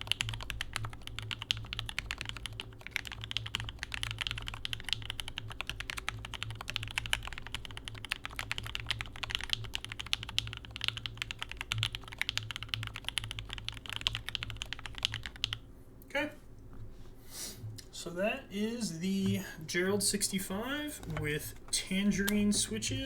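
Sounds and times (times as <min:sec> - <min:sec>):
fast typing on mechanical keyboard: 0:00.0 - 0:15.6.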